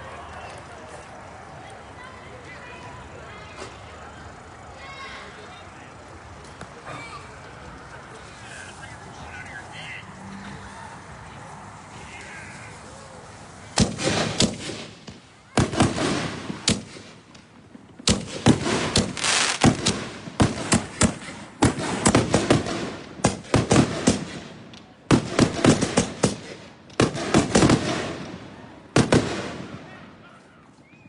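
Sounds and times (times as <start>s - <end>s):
firework shells bursting: 13.7s - 29.9s.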